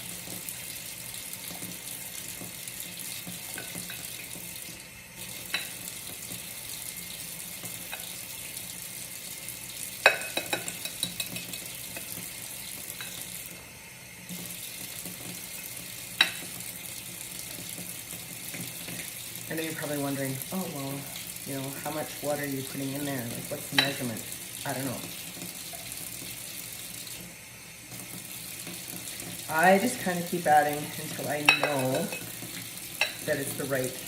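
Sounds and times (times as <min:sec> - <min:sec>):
whisk clicking on bowl: 0:10.0 - 0:12.1, 0:31.1 - 0:32.4.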